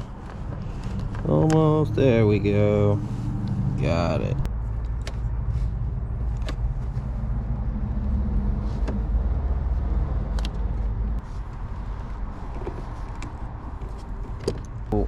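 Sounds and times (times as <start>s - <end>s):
light clicks of wiring parts: 0.8s - 1.8s.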